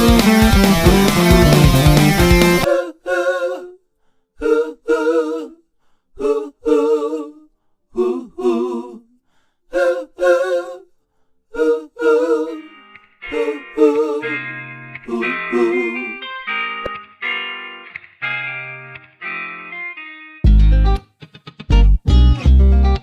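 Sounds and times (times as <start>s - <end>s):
instrumental backing music: 0.0s - 2.7s, 12.7s - 23.0s
person singing unaccompanied: 0.0s - 3.8s, 11.5s - 16.2s.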